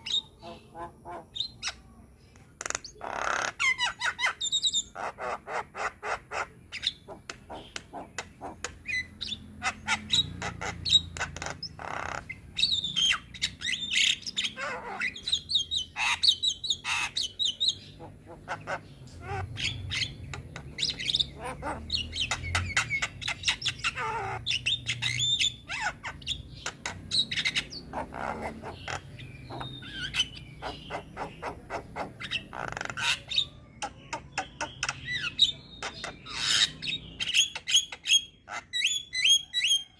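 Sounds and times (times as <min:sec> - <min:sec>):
myna bird chattering: 0:00.0 - 0:39.9.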